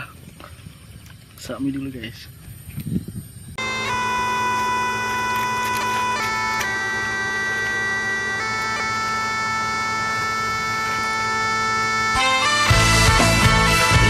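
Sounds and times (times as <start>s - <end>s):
steady low drone: 3.1s - 14.0s
melody of long held notes: 3.6s - 14.0s.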